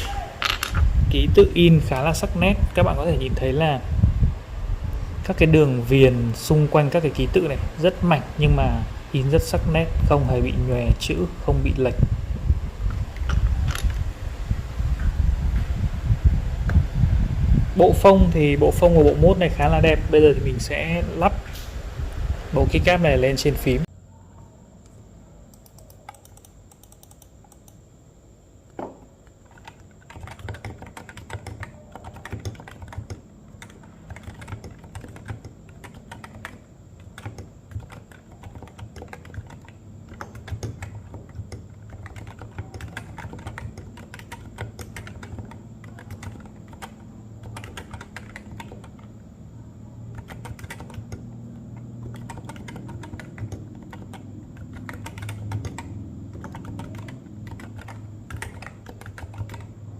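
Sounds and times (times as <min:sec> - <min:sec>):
keyboard keys clacking: 0:29.5 - 0:49.1, 0:50.2 - 0:59.7.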